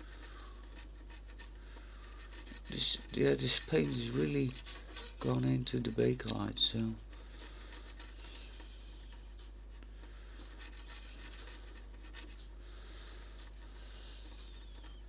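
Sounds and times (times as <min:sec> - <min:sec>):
cloth scrubbing a radio case: 0:00.0 - 0:15.0.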